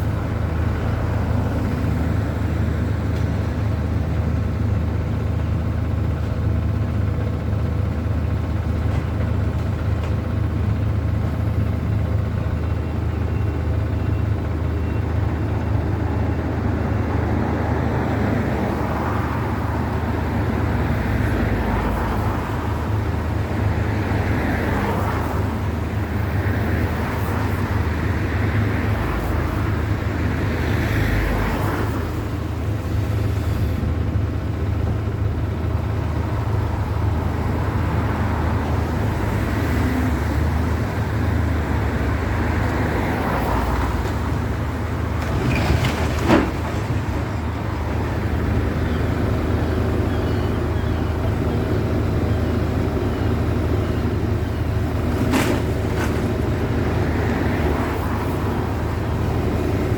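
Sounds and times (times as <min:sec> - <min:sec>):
engine humming: 0:00.0 - 0:59.9.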